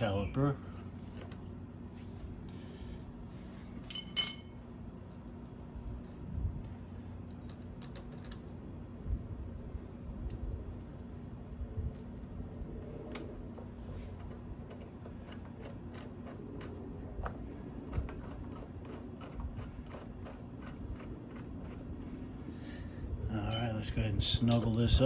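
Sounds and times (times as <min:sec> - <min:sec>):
low steady hum: 0:00.0 - 0:25.0
hand tools clicking and tapping: 0:13.2 - 0:22.2.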